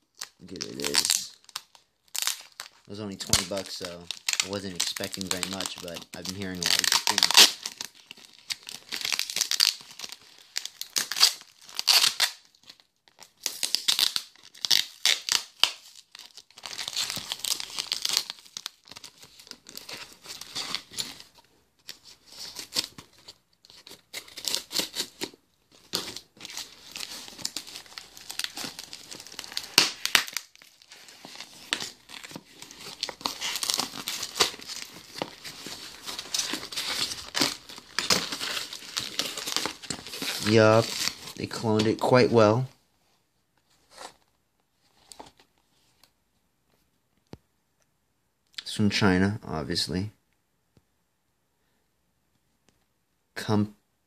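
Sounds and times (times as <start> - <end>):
packaging ripping and crumpling: 0.0 - 42.1.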